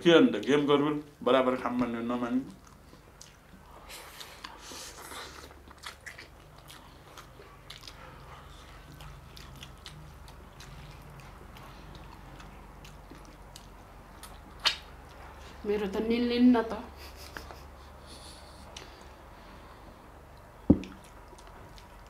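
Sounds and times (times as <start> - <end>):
person chewing and eating: 2.4 - 15.6, 17.2 - 22.0
wet mouth clicks and smacks: 12.0 - 14.9.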